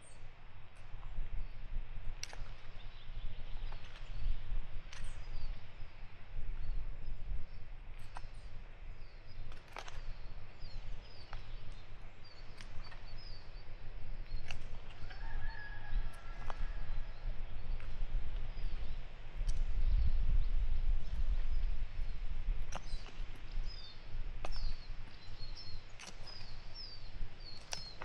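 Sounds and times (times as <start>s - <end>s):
small birds chirping: 7.4s - 28.0s.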